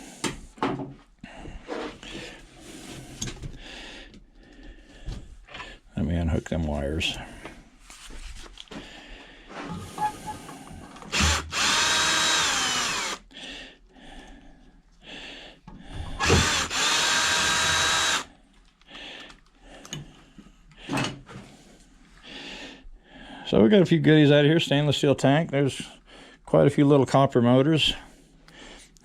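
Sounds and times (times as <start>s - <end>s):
cordless power drill whirring: 11.1s - 13.3s, 16.2s - 18.3s.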